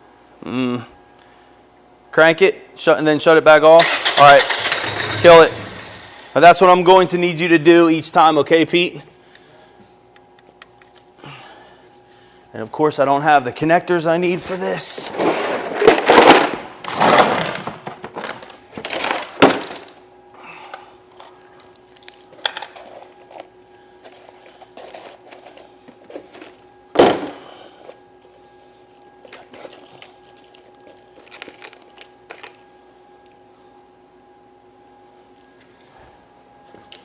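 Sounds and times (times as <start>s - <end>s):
tools and parts rustling and clattering: 3.8s - 6.4s, 14.5s - 20.0s, 20.7s - 33.3s.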